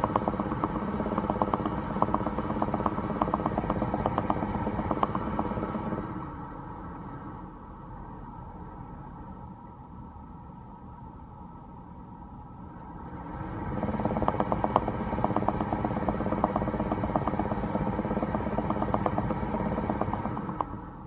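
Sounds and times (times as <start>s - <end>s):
car bubbling and popping: 0.0s - 5.8s
steady low hum: 0.0s - 21.0s.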